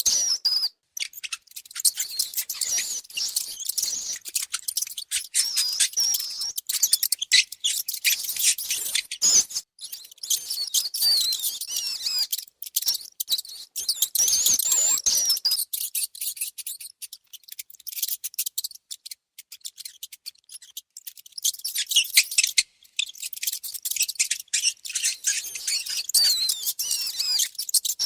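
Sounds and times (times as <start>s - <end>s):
mice squeaking: 0.0s - 28.0s.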